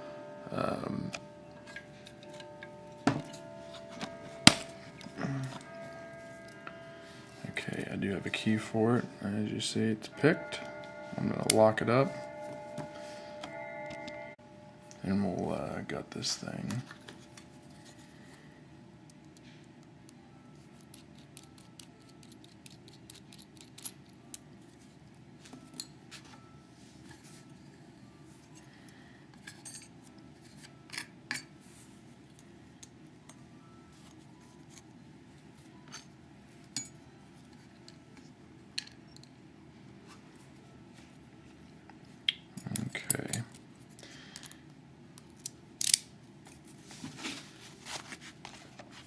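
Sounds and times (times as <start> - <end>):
faint steady hum: 0.0 - 49.0
metallic clicks of lock parts: 20.9 - 24.4, 45.2 - 46.1.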